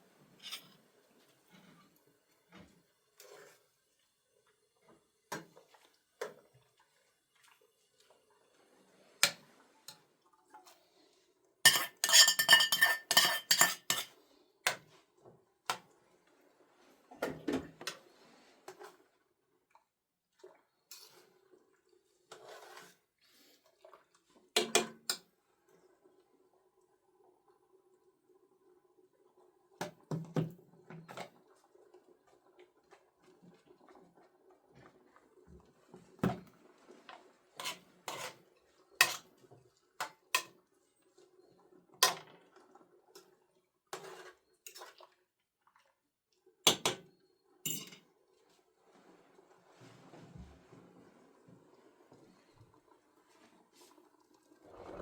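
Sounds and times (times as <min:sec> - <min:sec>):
metal dishes and utensils clattering: 0:00.4 - 0:00.8, 0:11.7 - 0:14.2, 0:39.0 - 0:39.3, 0:47.7 - 0:48.1.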